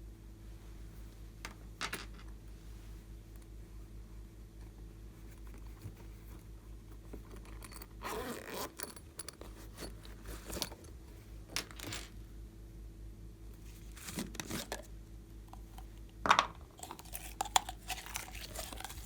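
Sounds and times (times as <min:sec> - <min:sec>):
steady low hum: 0:00.0 - 0:19.0
slime crackling and squishing: 0:16.8 - 0:19.0.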